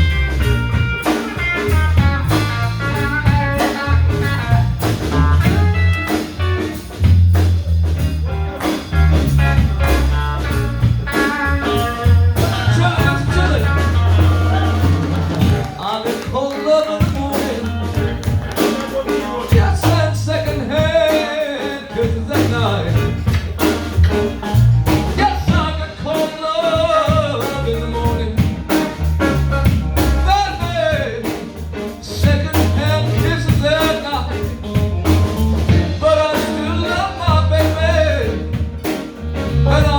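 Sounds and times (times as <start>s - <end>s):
bending lead guitar line: 0.0s - 39.9s
live blues band: 0.0s - 39.9s.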